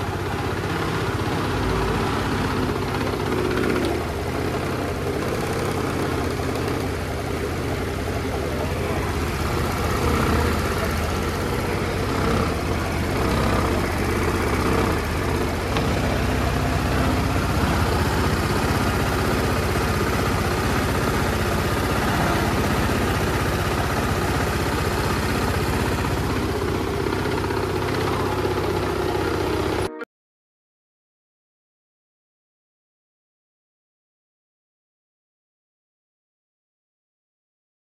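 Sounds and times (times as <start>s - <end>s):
scooter engine idling: 0.0s - 29.9s.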